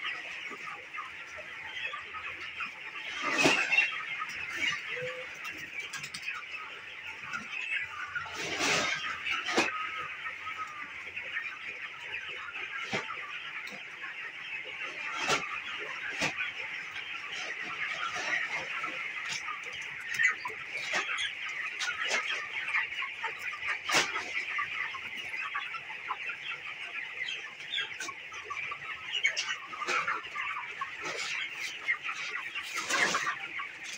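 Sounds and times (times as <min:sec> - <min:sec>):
chicks peeping: 0:00.0 - 0:33.9.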